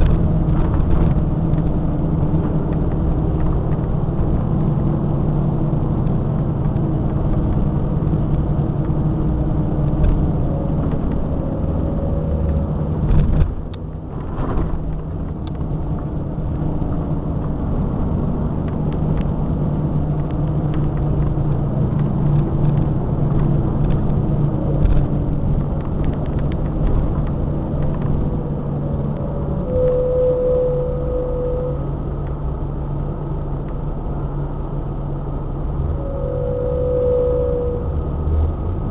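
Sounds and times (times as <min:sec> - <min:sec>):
bus diesel engine running: 0:00.0 - 0:38.9
rattling clicks: 0:24.8 - 0:28.4.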